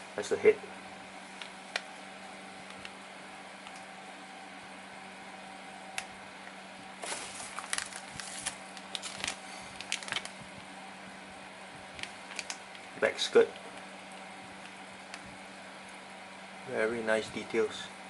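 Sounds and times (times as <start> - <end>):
low steady hum: 0.0 - 18.0
plastic packaging crinkling: 7.0 - 10.6, 11.9 - 12.9.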